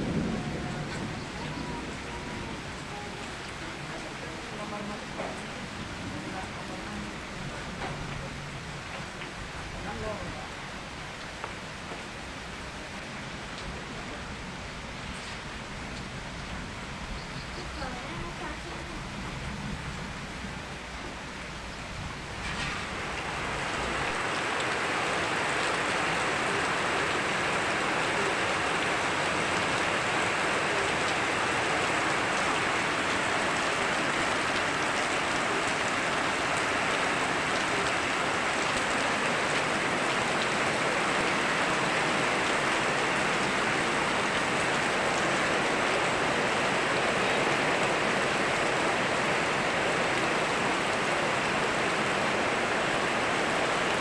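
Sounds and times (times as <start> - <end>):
rain falling: 0.0 - 54.0
river rushing: 22.3 - 54.0.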